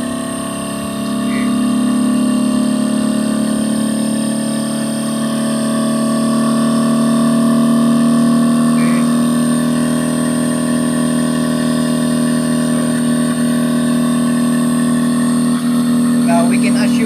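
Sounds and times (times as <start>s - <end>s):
air conditioner humming: 14.0s - 17.0s.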